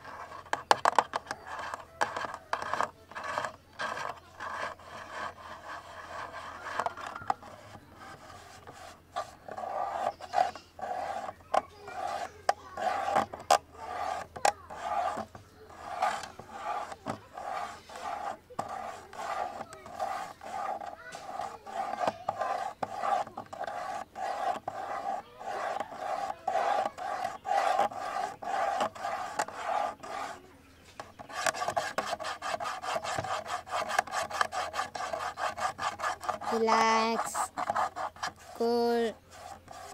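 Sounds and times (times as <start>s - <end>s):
scratching on camera body: 0.0s - 39.9s.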